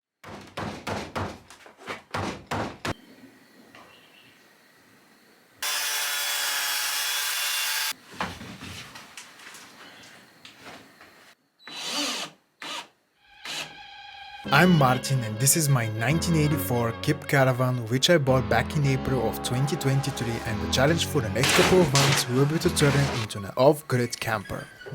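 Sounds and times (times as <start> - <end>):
power tool bursts: 5.6 - 8.0, 21.4 - 23.3.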